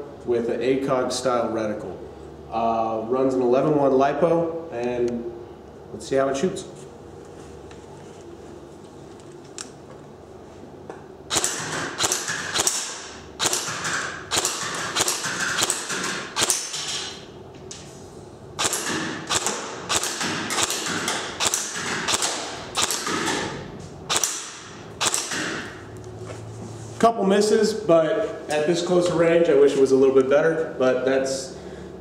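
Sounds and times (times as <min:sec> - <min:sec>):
airsoft rifle shots: 0:11.3 - 0:17.1, 0:18.6 - 0:23.5, 0:24.1 - 0:25.8.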